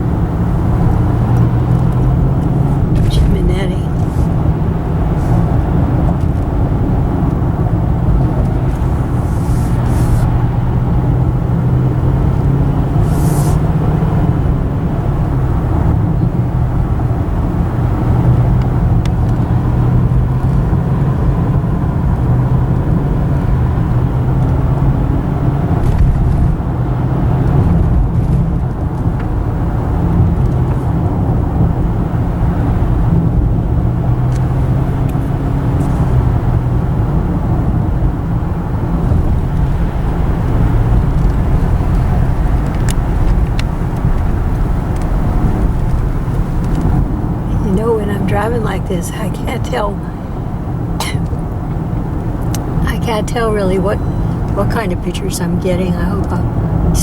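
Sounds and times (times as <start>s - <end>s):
car engine drone: 0.0s - 57.0s
tyre road noise: 0.0s - 57.0s
brief high hisses: 13.0s - 13.6s.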